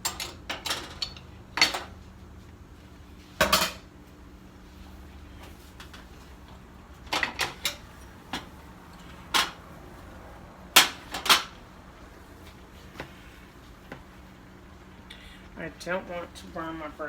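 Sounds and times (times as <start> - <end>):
dishes and utensils clinking: 3.4 - 3.9.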